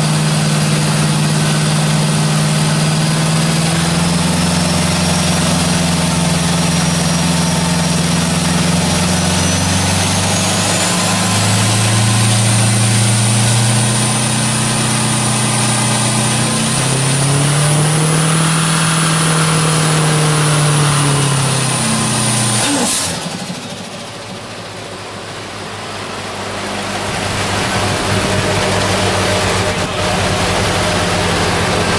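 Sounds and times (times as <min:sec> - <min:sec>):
engine running hard: 0:00.0 - 0:31.9
high turbo whistle: 0:02.4 - 0:23.7
rushing noise: 0:25.6 - 0:31.9.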